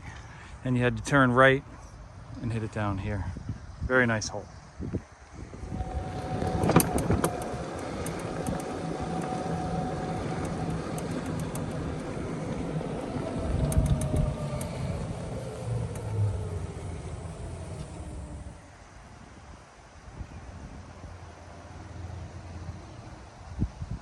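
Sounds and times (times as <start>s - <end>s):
faint whine: 0.1s - 19.3s
golf cart motor hum: 5.2s - 19.0s
rattles and knocks: 5.6s - 18.4s.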